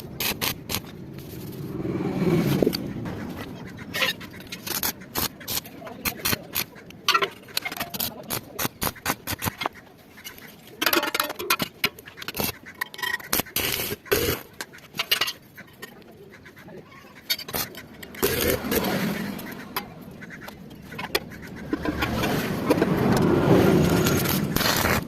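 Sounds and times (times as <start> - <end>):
sharp clicks and knocks: 4.3 - 16.1, 17.3 - 25.0
short scraping bursts: 17.0 - 20.4, 21.6 - 25.0.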